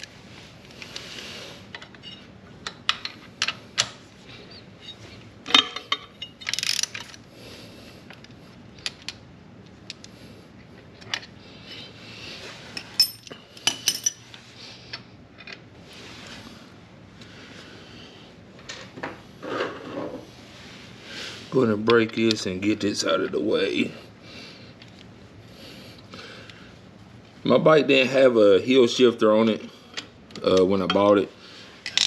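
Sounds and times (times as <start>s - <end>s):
metallic clinks of wrenches: 12.8s - 14.2s.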